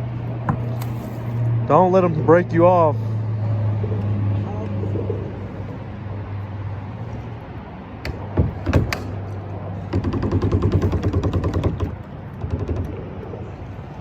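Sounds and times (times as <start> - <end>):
sharp knocks: 8.0 - 9.2, 9.9 - 13.0.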